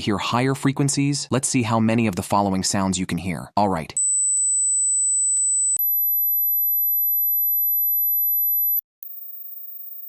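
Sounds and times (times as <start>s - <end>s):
high-pitched sine test tones: 4.0s - 10.0s.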